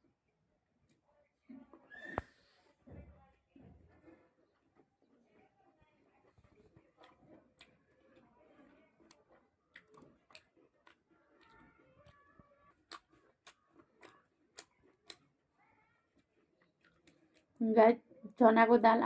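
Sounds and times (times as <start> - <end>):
close-up chewing with mouth clicks: 3.9 - 17.6.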